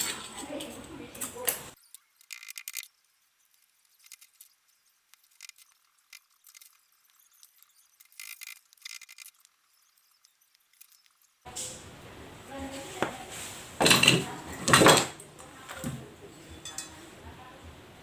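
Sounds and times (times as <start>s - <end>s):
metal parts and tools clinking: 0.0s - 11.4s, 16.5s - 17.0s.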